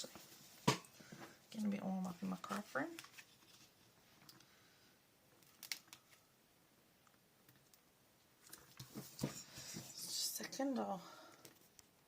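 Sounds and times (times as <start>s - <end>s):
faint clicks and rustles: 0.0s - 4.6s.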